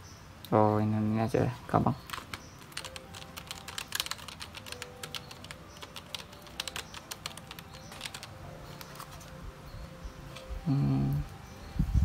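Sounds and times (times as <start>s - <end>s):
mechanical keyboard key clicks: 2.1s - 9.0s.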